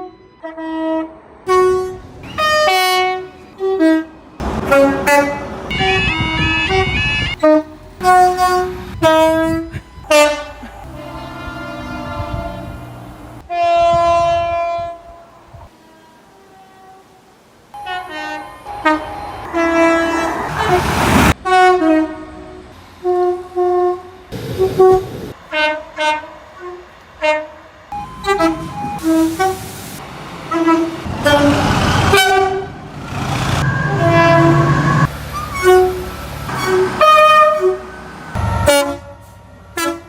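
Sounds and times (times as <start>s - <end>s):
train horns tooting: 0.0s - 40.0s
rushing noise: 17.4s - 21.5s, 24.2s - 25.6s, 28.0s - 37.0s.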